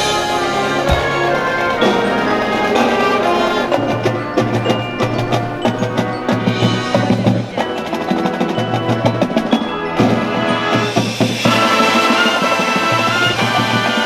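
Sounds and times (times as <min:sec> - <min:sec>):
mallet and drum strikes: 0:00.9 - 0:06.3.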